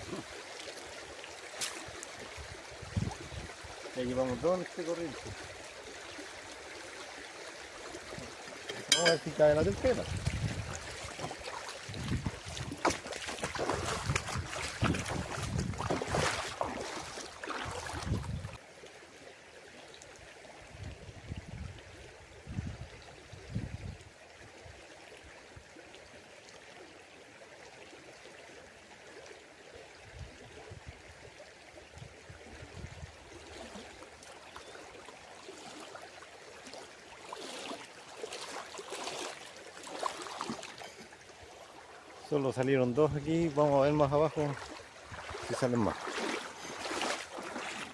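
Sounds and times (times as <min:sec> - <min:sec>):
stream rushing: 0:00.0 - 0:18.7, 0:32.5 - 0:47.9
wind buffeting microphone: 0:02.8 - 0:03.6, 0:09.6 - 0:16.6, 0:17.6 - 0:18.6, 0:22.4 - 0:24.0.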